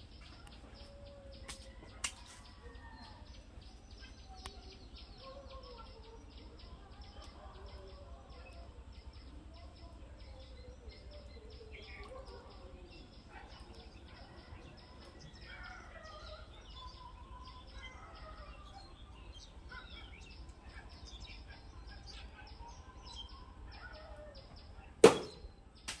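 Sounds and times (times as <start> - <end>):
birds chirping: 0.0 - 26.0
loud knock: 25.0 - 25.4.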